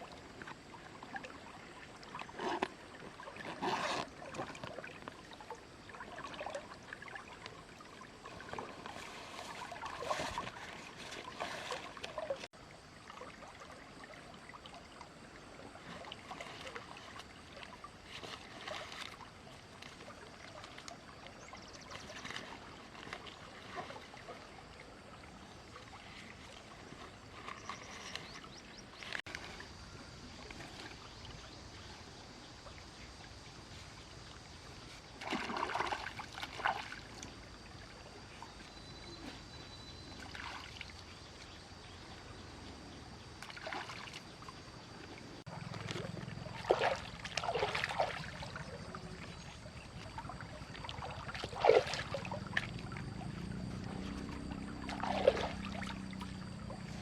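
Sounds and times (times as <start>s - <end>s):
water splashing and sloshing: 0.0s - 57.0s
low hum: 45.5s - 57.0s.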